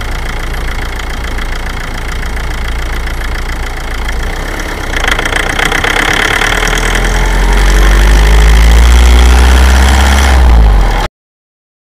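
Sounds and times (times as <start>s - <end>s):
diesel engine knocking under load: 4.9s - 7.1s.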